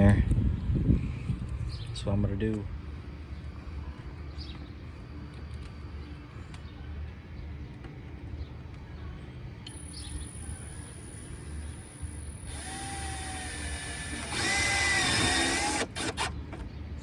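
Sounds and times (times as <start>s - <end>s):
power drill driving a screw: 12.5s - 16.3s.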